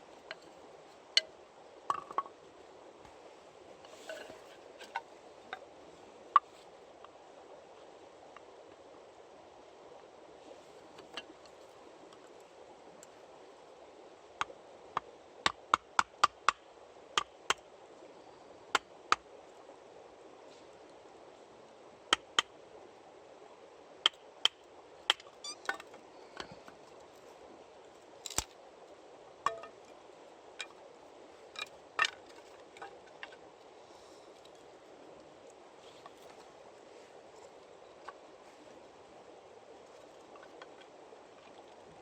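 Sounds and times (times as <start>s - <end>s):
faint steady hiss: 0.0s - 42.0s
firewood knocking and cracking: 1.9s - 2.3s, 28.2s - 28.5s, 29.4s - 29.9s, 31.5s - 33.4s.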